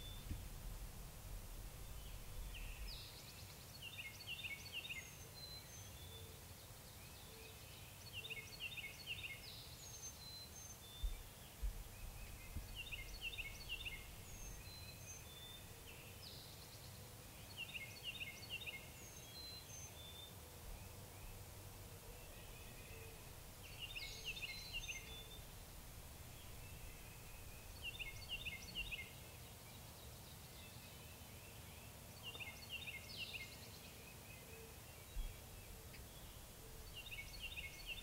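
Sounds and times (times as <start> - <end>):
faint low rumble: 0.0 - 3.1
songbirds singing: 0.0 - 38.0.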